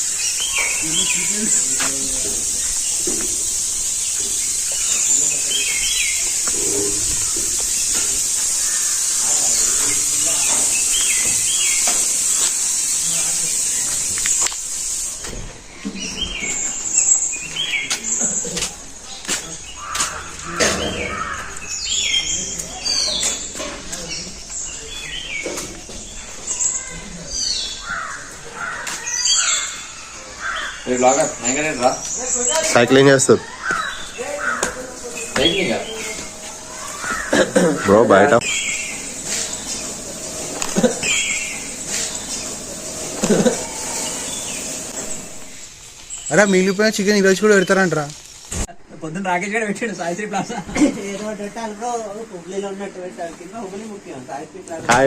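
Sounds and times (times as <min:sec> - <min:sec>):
high-pitched insect drone: 0:00.0 - 0:15.4, 0:30.9 - 0:47.0
lower rising bird calls: 0:00.0 - 0:18.5, 0:33.4 - 0:46.3
birds chirping: 0:00.0 - 0:55.0
faint voices: 0:17.3 - 0:45.5.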